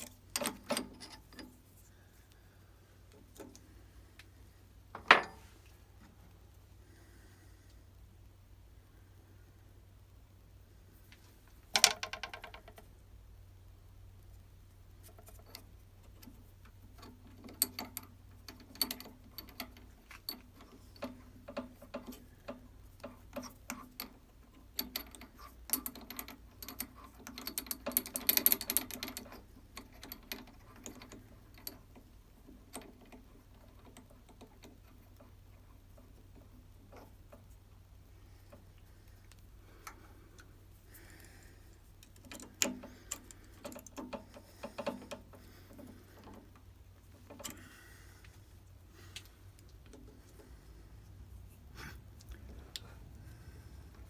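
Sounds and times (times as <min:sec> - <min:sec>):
tools clicking and rattling: 0:00.0 - 0:01.7, 0:15.1 - 0:35.3, 0:39.3 - 0:48.4
faint steady hum: 0:00.0 - 0:54.0.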